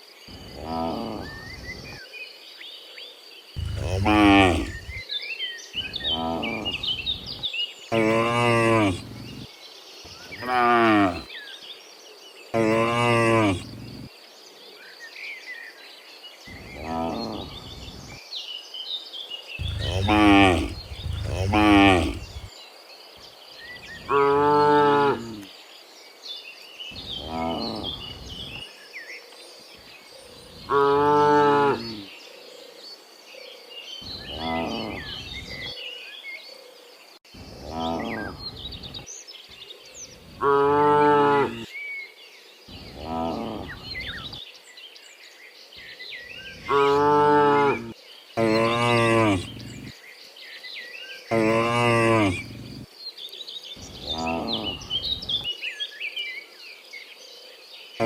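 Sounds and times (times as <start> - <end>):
small birds chirping: 3.1 - 11.7, 12.5 - 14.1, 16.4 - 18.3, 18.9 - 22.8, 47.8 - 58.0
cows mooing: 3.6 - 5.0, 8.0 - 9.4, 10.4 - 11.3, 12.6 - 14.1, 19.6 - 22.5, 48.5 - 49.9.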